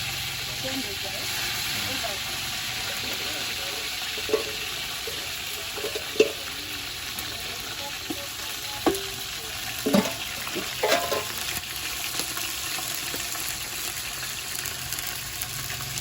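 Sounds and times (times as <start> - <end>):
food sizzling in a pan: 0.0 - 16.0
pan clattering: 3.6 - 6.9, 8.1 - 11.6.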